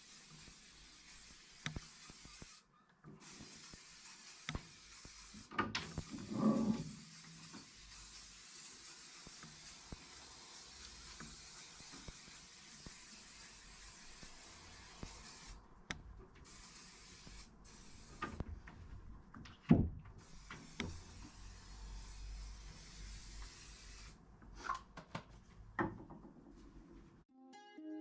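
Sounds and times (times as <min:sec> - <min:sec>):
rubbing and handling on wood: 0:03.2 - 0:10.0.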